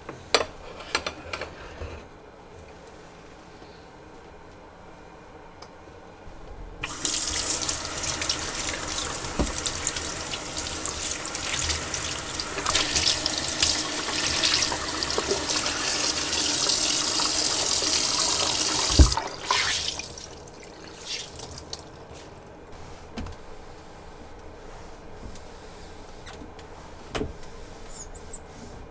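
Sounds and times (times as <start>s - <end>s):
tap water running into sink: 6.7s - 22.3s
tap shutting off with a knock: 6.8s - 16.8s, 17.7s - 19.3s.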